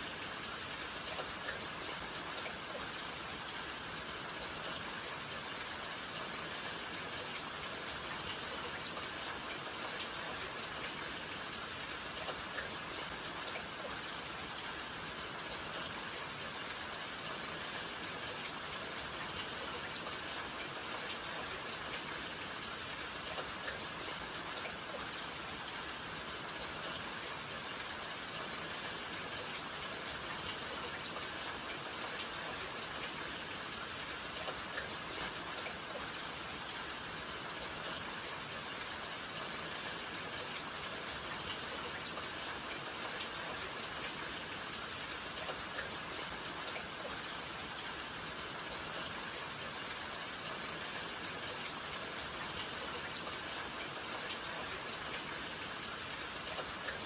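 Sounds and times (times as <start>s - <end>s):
steady rain patter: 0.0s - 57.0s.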